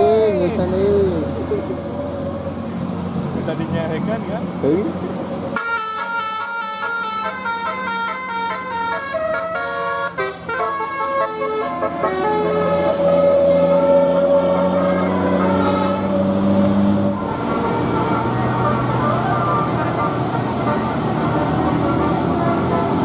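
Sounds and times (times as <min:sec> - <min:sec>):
multi-tone air horn melody: 0:05.6 - 0:16.5, 0:17.5 - 0:23.0.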